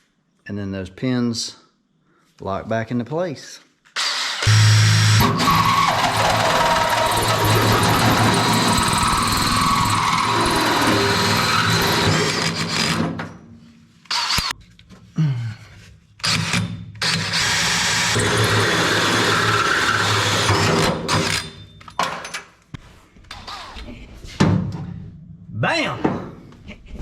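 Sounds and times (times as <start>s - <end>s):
drill hole saw cutting steel: 4.0s - 13.0s, 14.1s - 14.5s, 16.2s - 21.6s.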